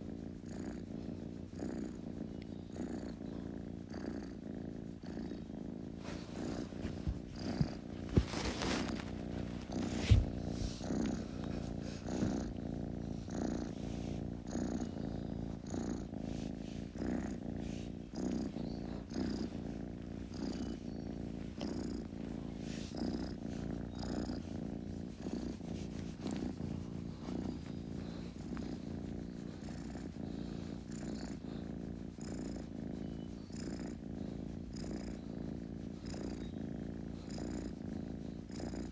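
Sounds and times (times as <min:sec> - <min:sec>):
kitten purring: 0:00.0 - 0:38.9.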